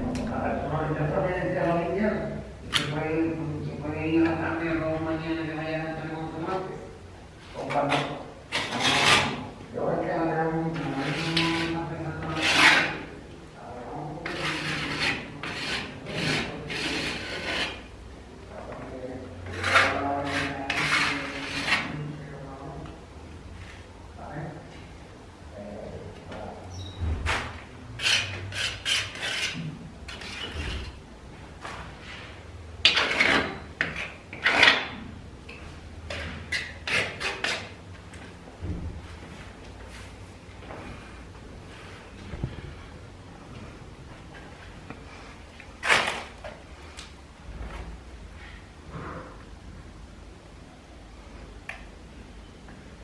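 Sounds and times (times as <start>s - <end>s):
hand tool scraping plaster wall: 7.6s - 9.5s, 10.7s - 13.1s, 14.1s - 17.9s, 19.4s - 22.2s, 27.3s - 31.0s, 32.8s - 35.0s, 36.1s - 37.8s.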